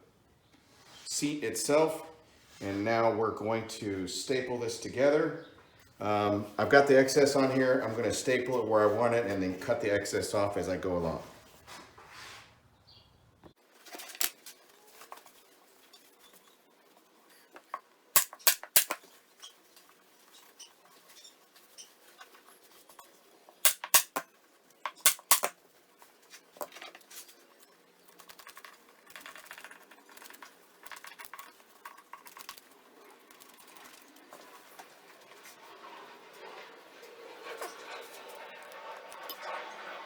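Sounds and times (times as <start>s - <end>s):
staple gun snapping: 18.2s - 19.0s, 23.7s - 24.2s, 25.0s - 25.5s.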